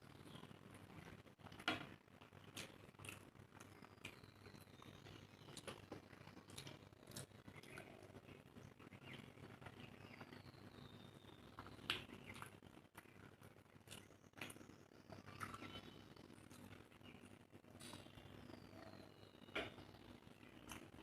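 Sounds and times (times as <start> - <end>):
chewing and mouth smacks: 0.7 - 9.3, 11.6 - 15.8.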